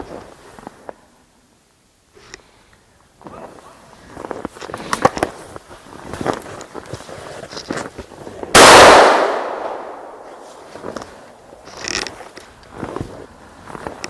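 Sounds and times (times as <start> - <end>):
loud gunshot with echo: 8.6 - 11.1.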